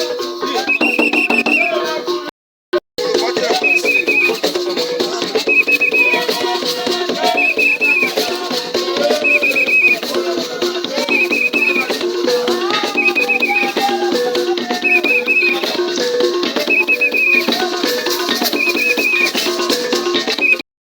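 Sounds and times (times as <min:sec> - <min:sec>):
high trilling figure: 0:07.3 - 0:08.3, 0:09.1 - 0:10.2, 0:12.8 - 0:14.1, 0:14.8 - 0:15.8, 0:16.7 - 0:17.6, 0:18.5 - 0:19.5.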